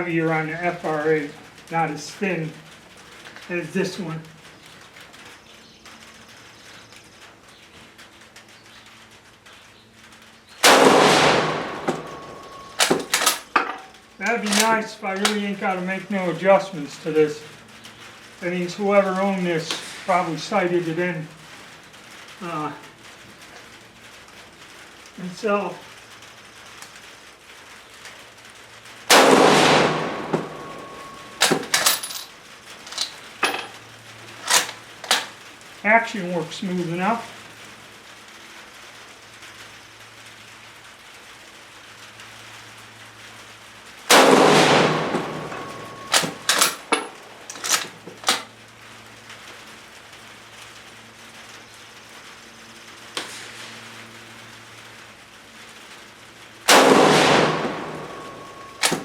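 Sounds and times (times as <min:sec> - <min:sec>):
rifle shot with echo: 0:10.6 - 0:13.4, 0:29.1 - 0:31.8, 0:44.1 - 0:47.0, 0:56.7 - 0:59.0
rifle bolt metallic clicks: 0:29.1 - 0:32.0, 0:34.5 - 0:35.3, 0:44.1 - 0:48.5, 0:58.8 - 0:59.0.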